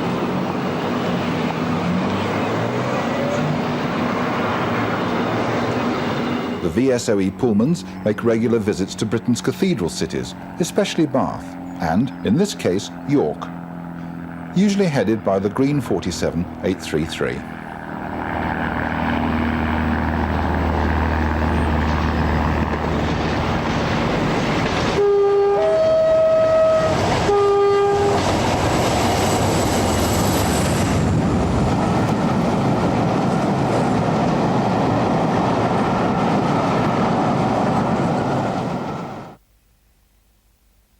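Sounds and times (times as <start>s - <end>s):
diesel locomotive engine hum: 0.0s - 39.4s
train rumbling past: 0.0s - 39.4s
two-tone train horn: 24.9s - 28.6s.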